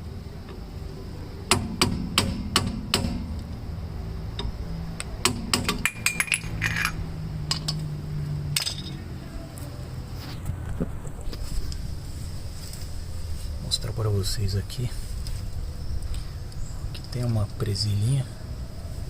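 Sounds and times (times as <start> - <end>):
metal tapping on brake hub: 5.2 - 7.8
metallic ring: 5.8 - 7.0.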